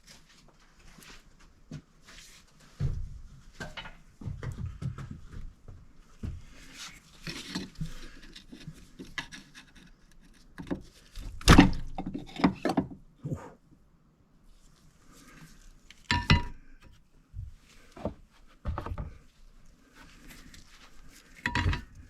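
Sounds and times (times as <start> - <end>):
tools knocking and clunking: 16.1 - 16.9, 18.0 - 19.2, 21.4 - 22.0.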